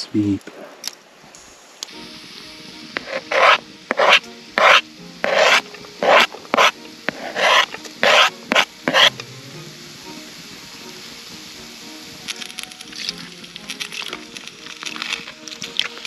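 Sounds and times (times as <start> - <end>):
utensil scraping onion: 3.0 - 9.1.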